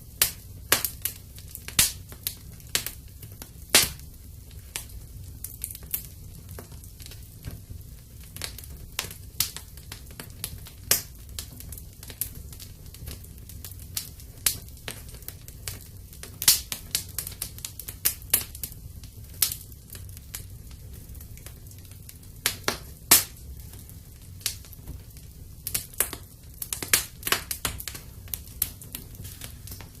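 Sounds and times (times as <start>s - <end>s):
wood fire crackling and popping: 0.0s - 30.0s.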